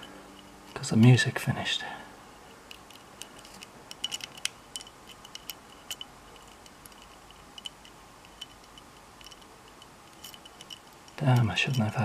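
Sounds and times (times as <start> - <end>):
lock pick metallic clicks: 2.6 - 11.9.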